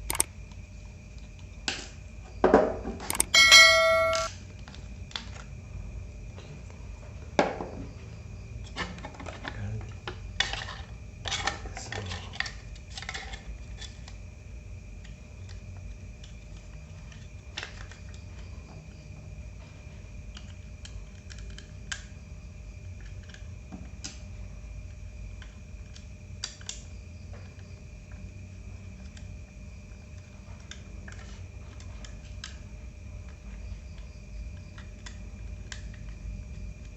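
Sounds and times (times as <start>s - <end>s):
small laptop parts clicking: 0.0s - 0.3s, 3.0s - 4.3s, 20.3s - 22.1s, 25.4s - 26.8s
faint steady hum: 0.0s - 36.9s.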